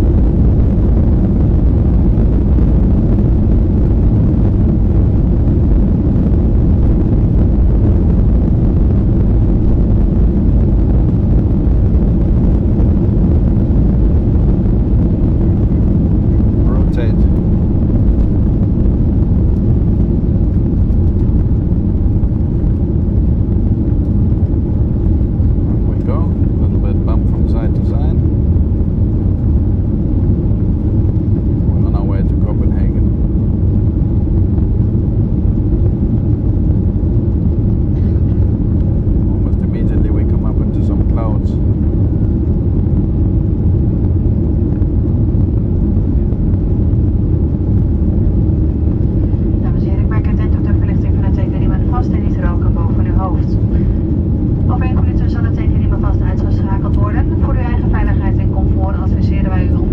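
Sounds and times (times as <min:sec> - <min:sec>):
airplane cabin rumble: 0:00.0 - 0:59.9
rushing air: 0:41.6 - 0:50.1, 0:53.3 - 0:54.9
rush of air: 0:53.5 - 0:54.7.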